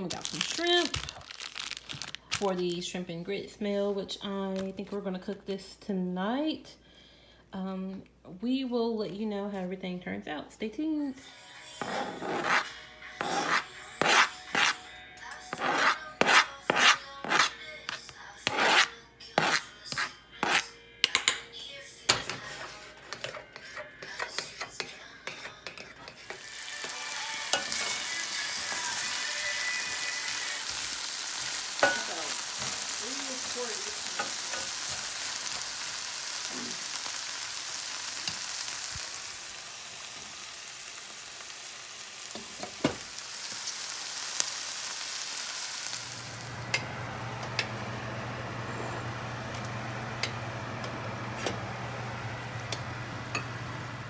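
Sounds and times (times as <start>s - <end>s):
food sizzling in a pan: 24.3s - 54.0s.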